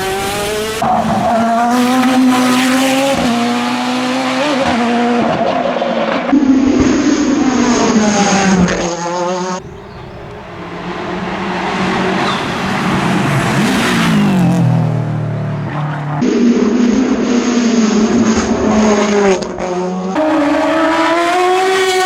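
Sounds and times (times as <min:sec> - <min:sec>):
race car approaching: 0:00.0 - 0:22.0
race car engine revving: 0:00.0 - 0:22.0.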